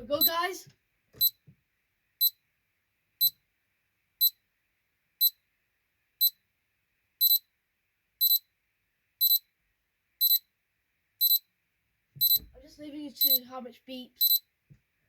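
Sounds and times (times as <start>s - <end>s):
alarm clock beeping: 0.0s - 0.5s, 12.2s - 12.5s, 13.2s - 13.4s, 14.2s - 14.4s.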